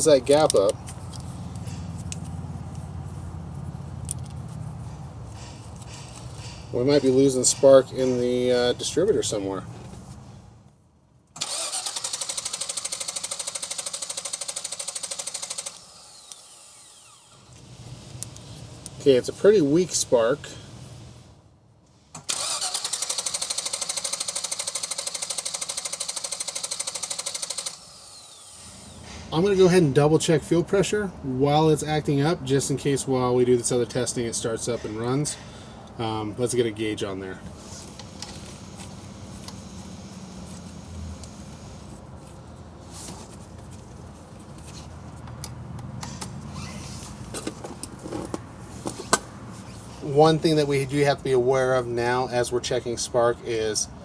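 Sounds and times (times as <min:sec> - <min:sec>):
engine cranking by starter: 0:11.4 - 0:17.9, 0:22.1 - 0:29.2.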